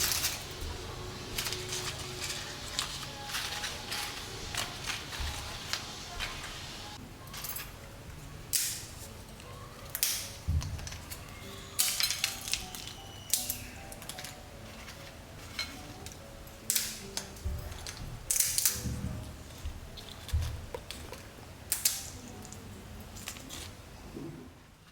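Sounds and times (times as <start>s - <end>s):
crunching chips: 0.0s - 6.4s, 9.4s - 18.8s
soft background music: 0.0s - 24.9s.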